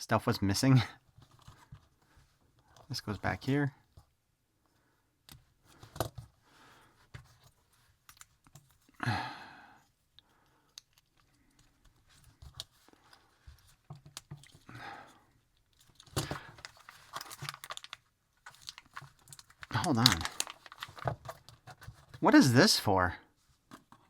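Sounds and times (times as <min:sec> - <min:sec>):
plastic parts clicking: 0:15.6 - 0:22.0.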